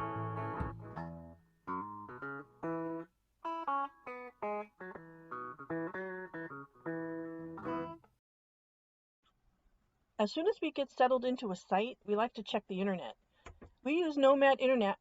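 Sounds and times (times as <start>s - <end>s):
plucked guitar melody: 0.0s - 8.1s.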